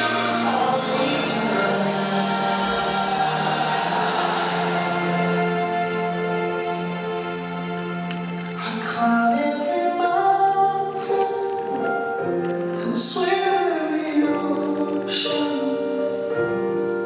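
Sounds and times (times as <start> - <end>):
person singing long notes: 0.0 - 16.8
slow love song: 0.0 - 17.0.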